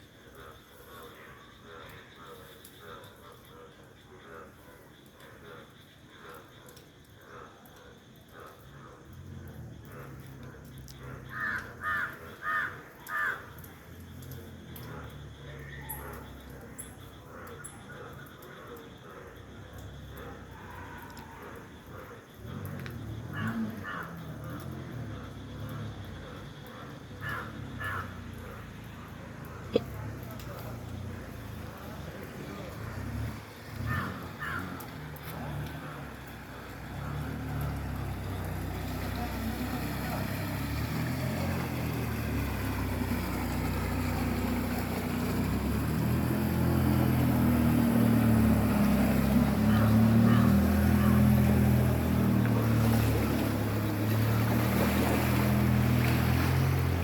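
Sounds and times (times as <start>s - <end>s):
vehicle engine approaching: 21.8s - 57.0s.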